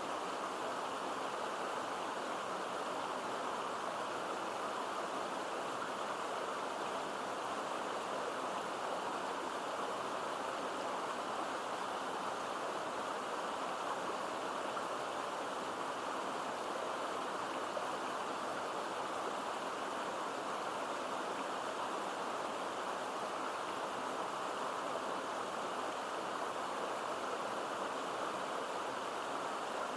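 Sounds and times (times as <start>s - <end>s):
stream babbling into a pool: 0.0s - 29.9s.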